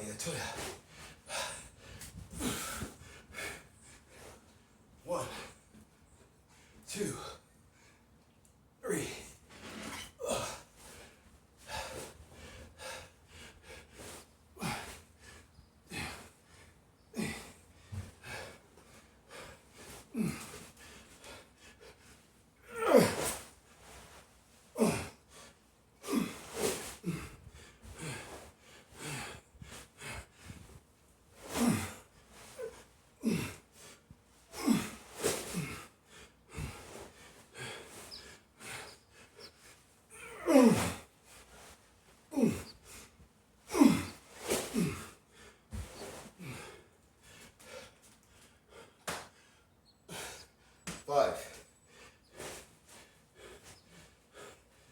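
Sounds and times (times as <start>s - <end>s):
man gasping breaths: 0.1s - 4.4s, 8.9s - 24.1s, 24.7s - 30.8s, 31.4s - 41.7s, 42.3s - 54.9s
man grunting: 5.1s - 5.4s, 8.8s - 9.3s, 10.2s - 10.6s, 20.2s - 20.4s, 22.7s - 23.3s, 24.8s - 25.1s, 31.6s - 32.0s, 32.6s - 33.6s, 34.6s - 35.0s, 40.2s - 41.0s, 42.3s - 42.7s, 43.7s - 44.2s, 44.8s - 45.0s.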